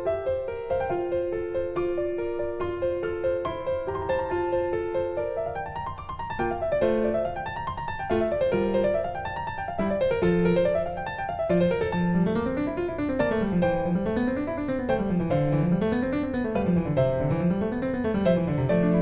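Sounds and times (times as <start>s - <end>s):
piano arpeggios: 0.0s - 19.0s.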